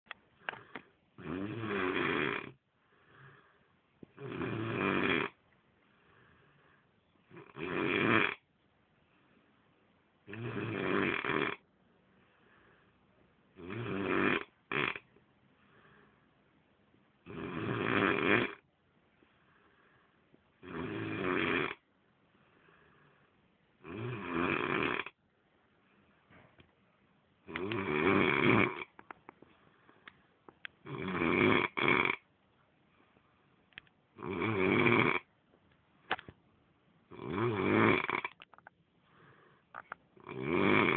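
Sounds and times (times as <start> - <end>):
faint breathing: 0.2 - 1.1, 2.6 - 4.1, 5.8 - 7.2, 12.0 - 13.3, 15.5 - 16.5, 19.1 - 20.6, 22.2 - 23.5, 29.0 - 30.7, 39.0 - 40.0
snort: 0.4 - 3.5, 4.2 - 5.4, 7.3 - 8.4, 10.3 - 11.6, 13.6 - 15.1, 17.2 - 18.6, 20.6 - 21.8, 23.8 - 25.2, 27.5 - 29.0, 30.8 - 32.2, 34.2 - 35.3, 37.1 - 38.4, 40.2 - 40.9
man snoring heavily: 0.6 - 3.4, 4.2 - 5.4, 7.3 - 8.4, 10.3 - 11.6, 13.6 - 15.0, 17.3 - 18.6, 20.6 - 21.8, 23.8 - 25.2, 27.5 - 28.9, 30.8 - 32.2, 34.2 - 35.3, 37.1 - 38.3, 40.2 - 40.9.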